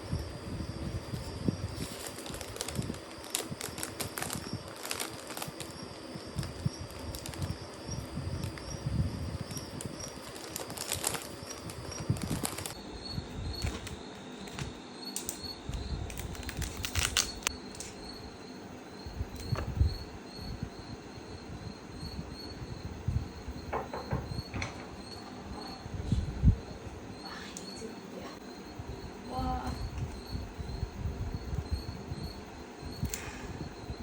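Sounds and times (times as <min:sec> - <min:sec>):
insects trilling: 0:00.0 - 0:34.0
clicks and rustles: 0:09.5 - 0:12.8.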